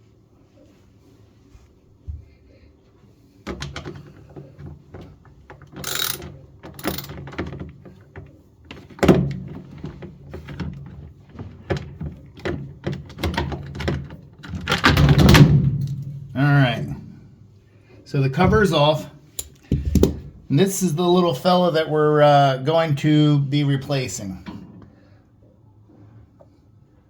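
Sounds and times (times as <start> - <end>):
clunks and rattles of metal cover: 3.5 - 16.3.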